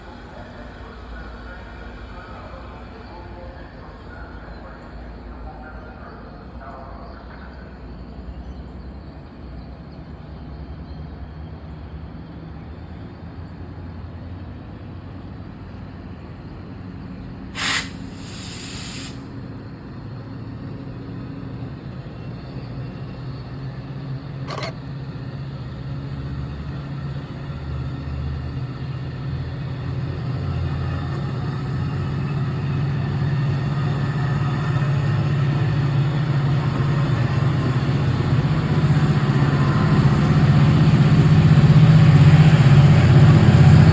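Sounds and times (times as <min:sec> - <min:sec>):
loud hiss of air: 0:17.6 - 0:19.3
locomotive engine droning: 0:19.5 - 0:43.9.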